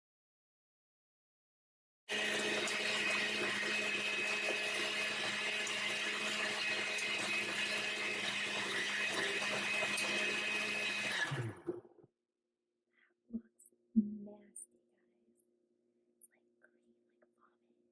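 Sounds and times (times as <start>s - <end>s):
blender motor whining: 2.1s - 11.9s.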